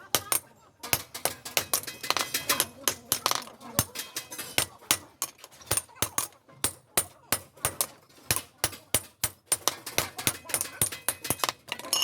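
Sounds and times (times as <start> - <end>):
hammer ringing on anvil: 5.7 - 12.0.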